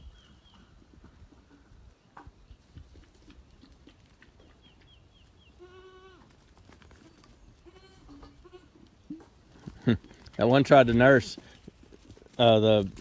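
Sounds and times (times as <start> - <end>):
goats bleating: 5.6 - 6.3, 7.6 - 8.8.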